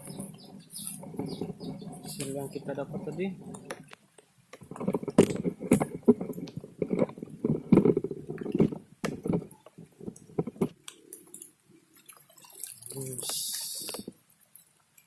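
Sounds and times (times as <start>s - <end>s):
fish thrashing in water: 4.6s - 14.2s.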